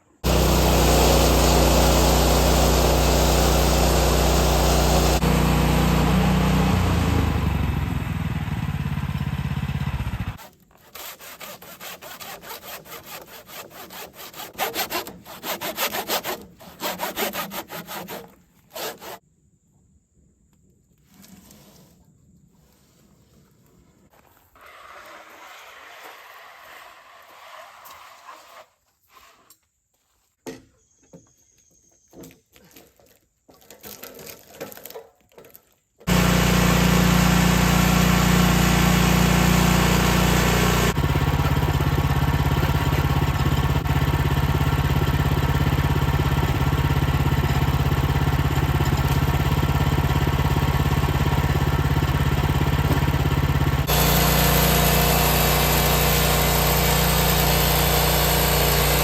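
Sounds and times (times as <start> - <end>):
sawmill engine running: 0.2 - 10.4, 36.1 - 59.0.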